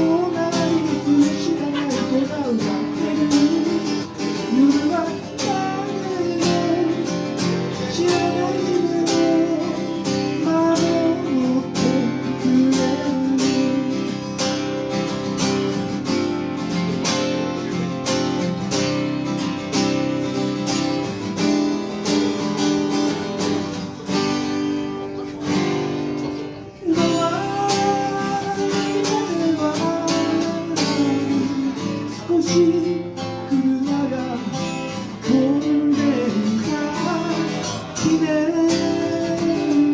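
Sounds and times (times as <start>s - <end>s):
person singing: 0.0s - 14.3s, 26.6s - 39.9s
guitar strumming: 0.0s - 39.9s.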